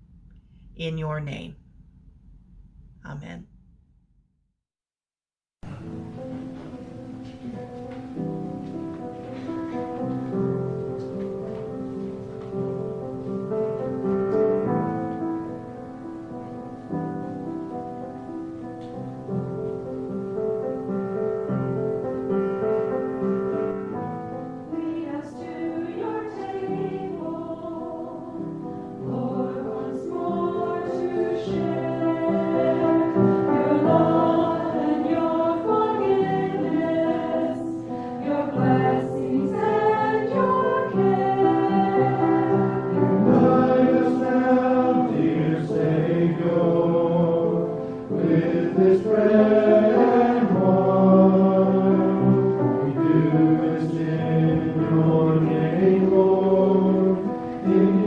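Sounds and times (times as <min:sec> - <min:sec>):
keyboard accompaniment: 0:05.6 - 0:58.0
church choir singing: 0:07.4 - 0:58.0.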